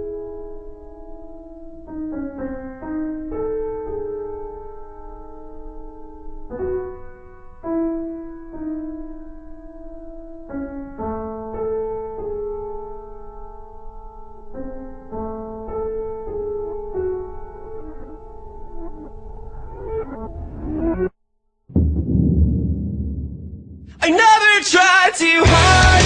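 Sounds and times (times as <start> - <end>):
piano playing slow chords: 0.0 - 21.1.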